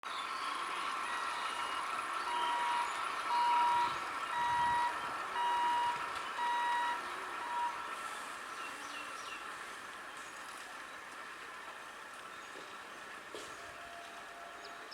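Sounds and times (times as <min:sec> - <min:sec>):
level crossing warning beeper: 0:00.4 - 0:07.9.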